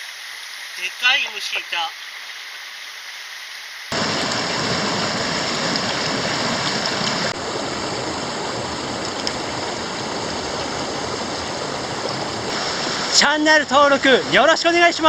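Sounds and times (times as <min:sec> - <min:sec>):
water rushing over rocks: 0:03.9 - 0:15.0.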